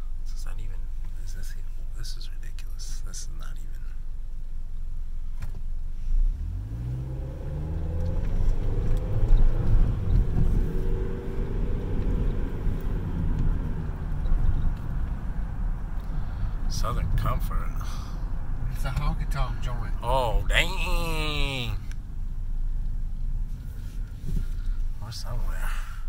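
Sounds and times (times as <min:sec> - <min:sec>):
car engine accelerating: 0:06.0 - 0:17.3.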